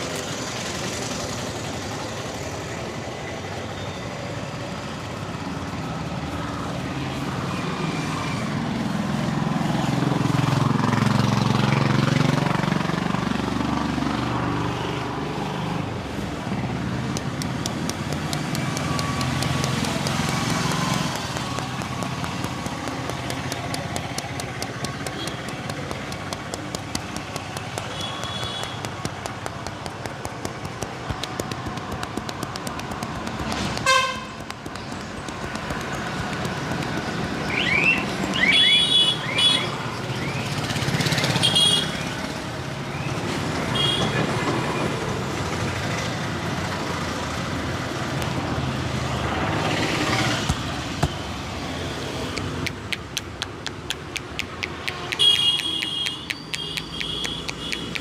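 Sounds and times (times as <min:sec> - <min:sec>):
street traffic noise: 0:00.0 - 0:58.0
rapid light clicks: 0:17.1 - 0:38.3, 0:52.3 - 0:58.0
vehicle horn toot: 0:33.8 - 0:34.4, 0:43.8 - 0:44.2.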